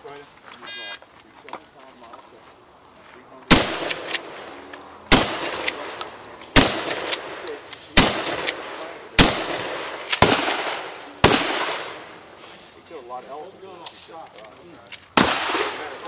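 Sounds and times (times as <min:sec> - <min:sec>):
shotgun shots with echo: 0:03.5 - 0:04.4, 0:05.1 - 0:12.1, 0:15.2 - 0:16.0.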